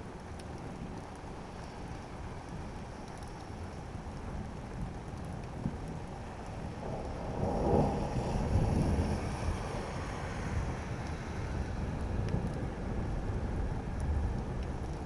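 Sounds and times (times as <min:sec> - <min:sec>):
steady rain: 0:00.0 - 0:15.0
thunder rumbling: 0:04.2 - 0:15.0.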